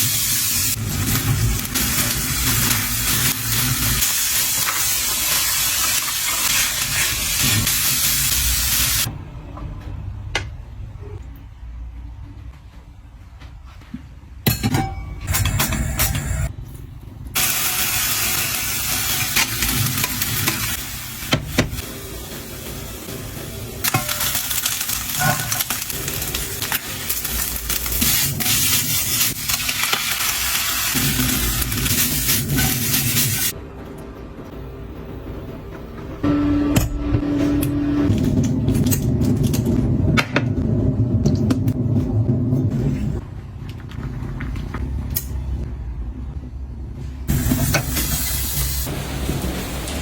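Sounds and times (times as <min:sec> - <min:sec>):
food sizzling in hot oil: 0:00.0 - 0:09.1, 0:17.4 - 0:33.5.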